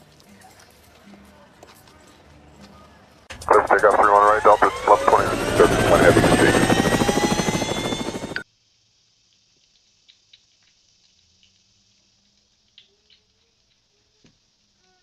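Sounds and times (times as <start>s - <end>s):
helicopter rotor noise: 3.3s - 8.4s.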